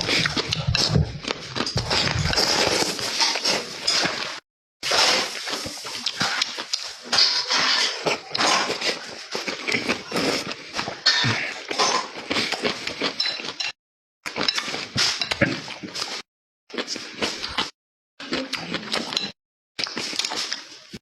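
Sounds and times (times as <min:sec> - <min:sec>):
utensils clinking on dishes: 0:00.6 - 0:09.5, 0:11.0 - 0:12.2, 0:13.0 - 0:13.8
wet chewing and smacking: 0:14.3 - 0:21.0.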